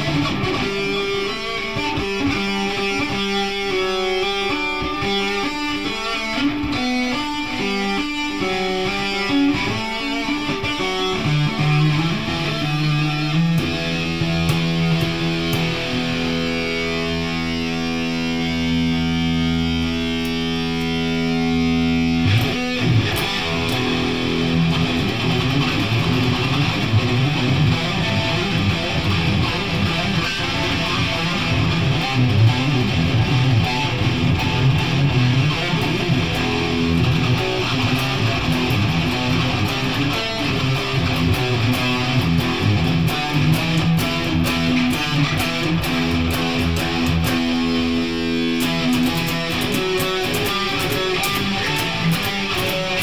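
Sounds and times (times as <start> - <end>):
electric guitar strumming: 0.0 - 53.0.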